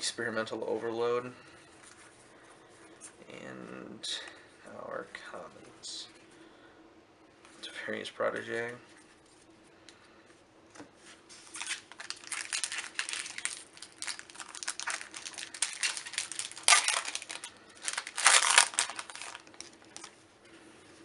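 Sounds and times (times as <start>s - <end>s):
foil wrapper crinkling: 11.4s - 20.2s.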